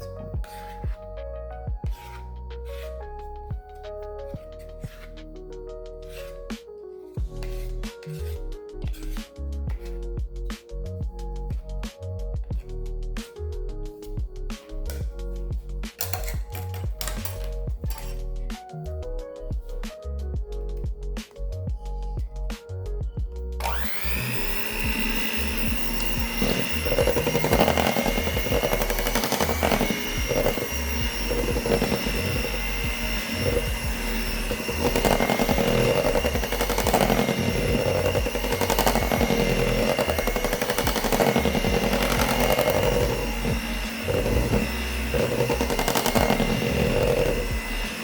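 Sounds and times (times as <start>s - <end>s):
electric mixer whining: 16.0s - 18.4s, 23.6s - 48.0s.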